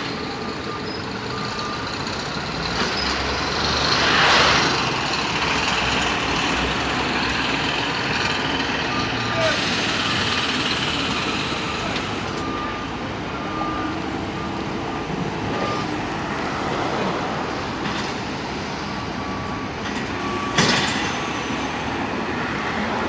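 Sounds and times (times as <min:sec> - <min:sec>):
road traffic: 0:00.0 - 0:23.0
reversing alarm beeping: 0:00.1 - 0:03.2, 0:08.8 - 0:16.0, 0:18.8 - 0:22.2.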